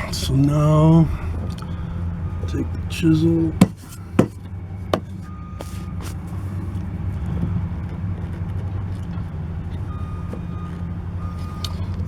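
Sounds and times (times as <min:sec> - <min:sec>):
low engine-like hum: 0:00.0 - 0:12.0
faint taps: 0:03.6 - 0:04.4, 0:05.0 - 0:05.8.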